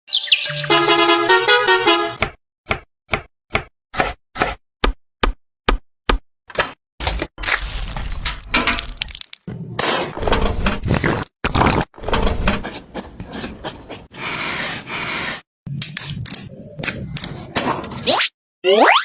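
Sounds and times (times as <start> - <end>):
scraping and knocking: 9.8 - 13.7.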